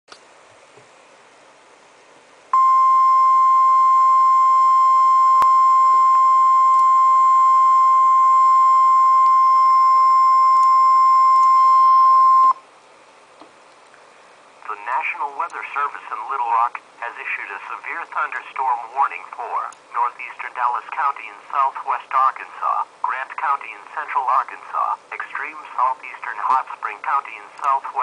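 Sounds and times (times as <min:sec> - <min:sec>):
faint radio hiss: 0:00.1 - 0:28.0
steady alarm beep: 0:02.6 - 0:12.6.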